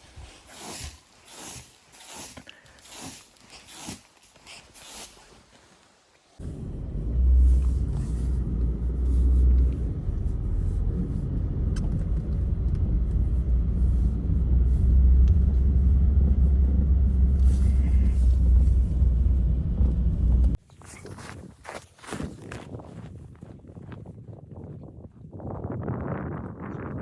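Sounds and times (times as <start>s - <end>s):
wind buffeting microphone: 22.2s - 27.0s.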